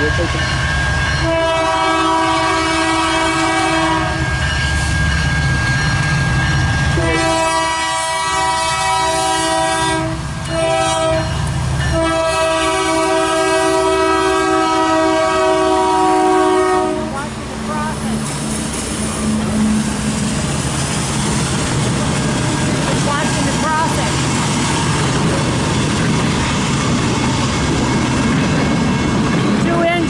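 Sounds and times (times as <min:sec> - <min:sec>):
passing train rumble: 0:00.0 - 0:30.0
locomotive air horn blasts: 0:01.2 - 0:04.4, 0:07.0 - 0:11.3, 0:11.9 - 0:17.3.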